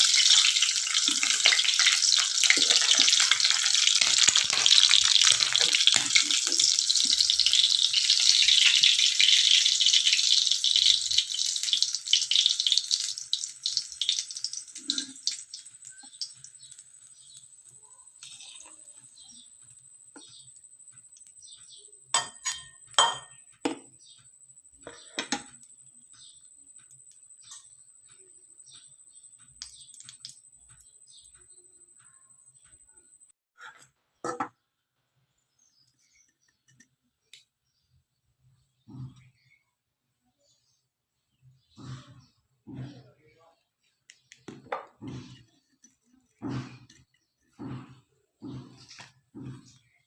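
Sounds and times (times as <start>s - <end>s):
utensils clinking on dishes: 0.0s - 10.2s, 22.1s - 23.8s
rice sizzling in a pan: 0.0s - 31.7s, 44.0s - 50.0s.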